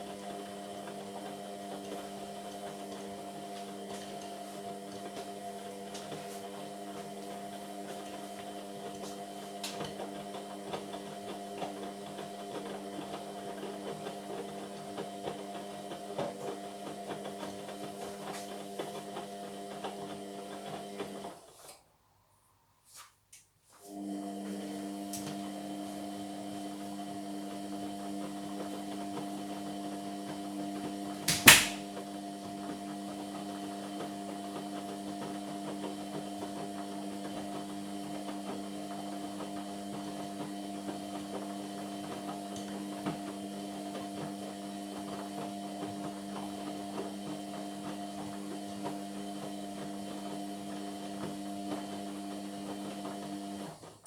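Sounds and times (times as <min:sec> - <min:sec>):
washing machine humming: 0:23.9 - 0:54.0
sharp knock: 0:31.3 - 0:31.8.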